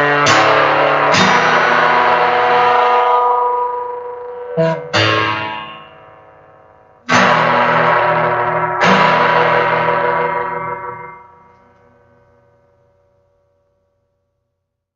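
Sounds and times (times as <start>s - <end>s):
electric guitar chords: 0.0s - 6.1s, 7.1s - 11.6s.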